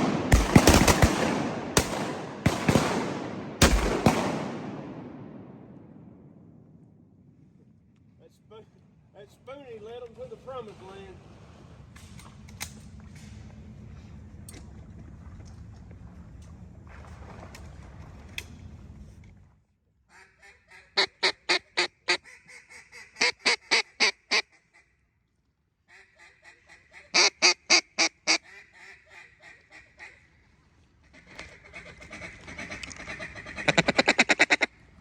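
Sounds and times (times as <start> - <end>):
rapid duck call chatter: 20.1 - 24.6, 25.9 - 30.1, 31.2 - 34.7
duck call quacks: 20.1 - 24.9, 25.9 - 30.3, 31.1 - 34.8.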